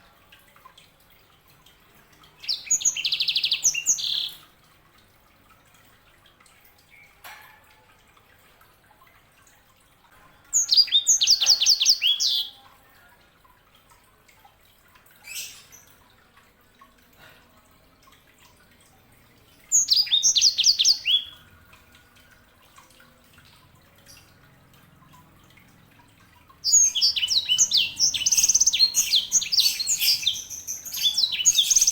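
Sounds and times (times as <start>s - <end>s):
canary singing: 2.4s - 4.4s, 19.7s - 21.5s, 26.6s - 31.9s.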